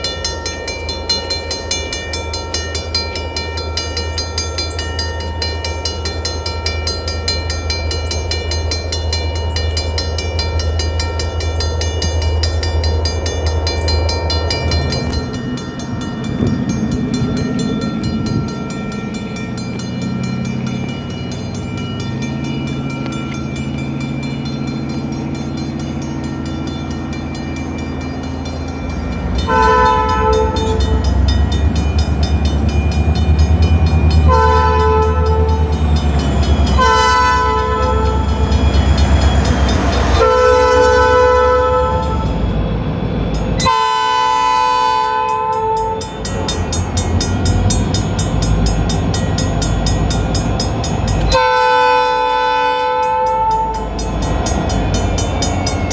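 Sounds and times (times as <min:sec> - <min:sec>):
railroad crossing bell ringing: 0:00.0 - 0:55.9
train horn blasts: 0:29.4 - 0:31.2, 0:34.2 - 0:35.9, 0:36.7 - 0:42.4, 0:43.6 - 0:46.2, 0:51.2 - 0:54.0.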